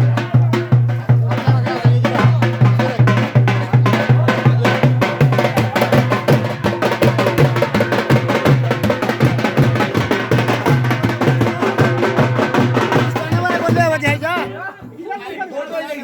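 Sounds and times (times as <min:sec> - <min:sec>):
drum-heavy music: 0:00.0 - 0:15.0.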